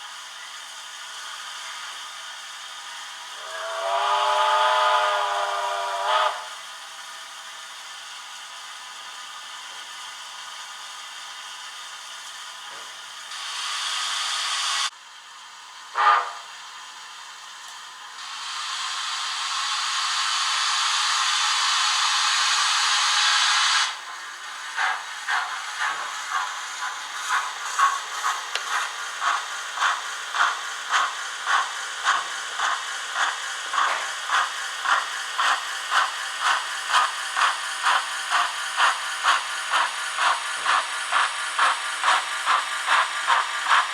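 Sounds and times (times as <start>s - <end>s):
steam hiss: 0.0s - 9.6s, 13.2s - 14.9s, 18.0s - 43.9s
steam exhaust chuffs: 3.1s - 7.4s, 18.2s - 43.9s
steam whistle: 3.3s - 6.7s, 15.9s - 16.6s.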